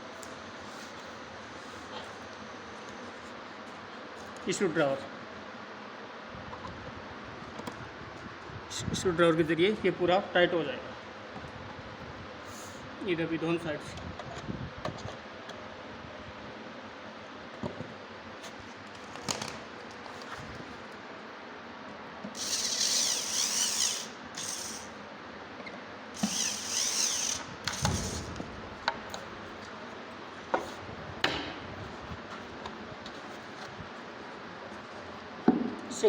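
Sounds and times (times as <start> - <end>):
electric screwdriver driving screws: 22.4 - 24.9, 26.2 - 28.4.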